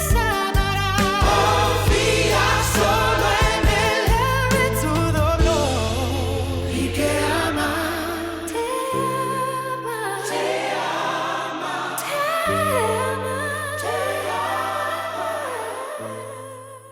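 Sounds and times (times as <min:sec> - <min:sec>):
slow worship ballad: 0:00.0 - 0:16.9
wordless sung voices: 0:00.0 - 0:16.9.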